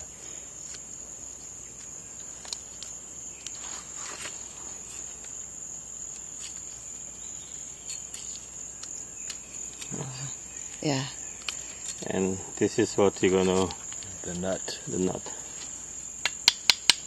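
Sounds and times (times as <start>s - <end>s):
insects droning: 0.0s - 17.0s.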